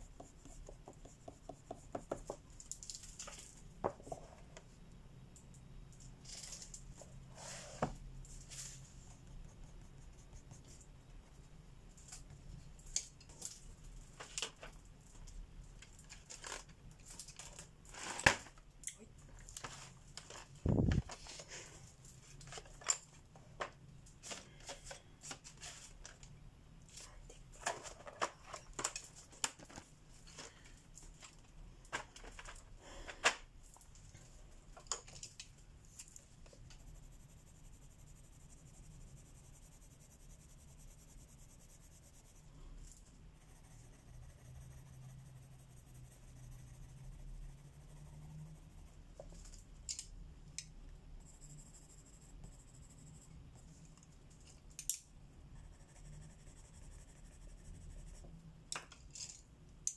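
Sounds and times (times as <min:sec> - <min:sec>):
pencil scratching on paper: 0:00.0 - 0:02.4, 0:08.5 - 0:10.9, 0:36.7 - 0:42.6, 0:43.3 - 0:49.0, 0:51.2 - 0:53.4, 0:55.6 - 0:58.3
pencils clicking and tapping: 0:00.1 - 0:03.1.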